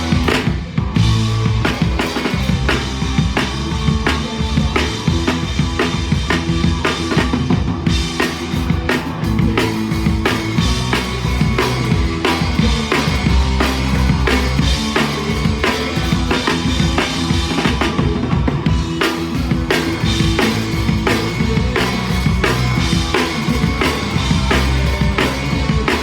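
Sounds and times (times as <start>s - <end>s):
live rock band playing: 0.0s - 26.0s.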